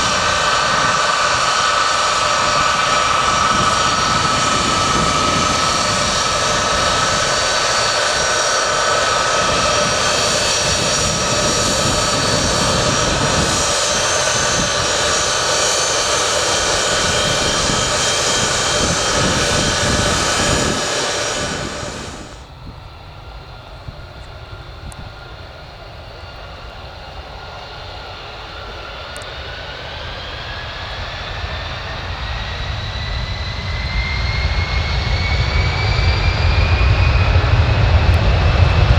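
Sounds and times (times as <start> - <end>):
jet whine rising in pitch: 0.0 - 22.5
jet engines roaring: 0.0 - 38.9.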